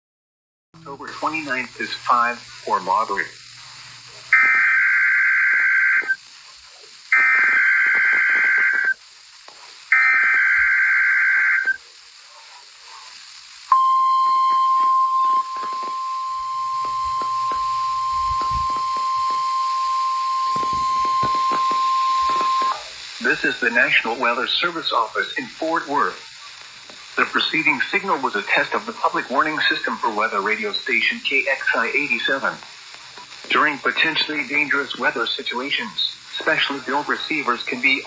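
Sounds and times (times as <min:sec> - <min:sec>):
steady warning alarm tone: 0:00.8 - 0:09.0, 0:09.9 - 0:13.0, 0:13.7 - 0:23.0, 0:29.2 - 0:38.0
digital data bursts: 0:00.8 - 0:38.0.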